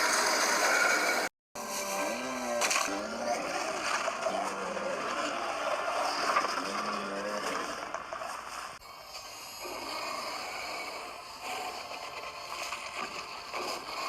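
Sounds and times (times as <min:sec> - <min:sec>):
noisy growl: 0:00.0 - 0:07.9, 0:09.6 - 0:14.0
low rough growl: 0:01.9 - 0:07.9.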